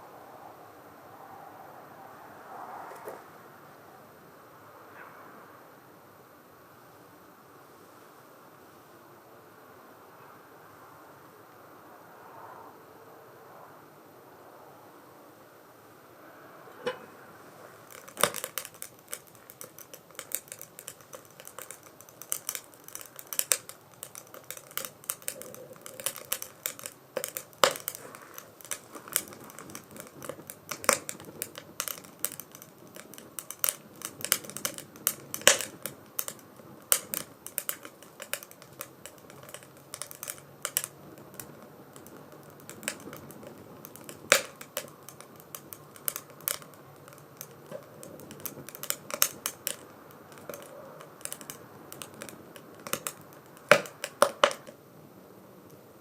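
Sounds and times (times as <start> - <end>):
rush of flame: 16.0 - 54.5
firewood crackling and popping: 16.6 - 56.0.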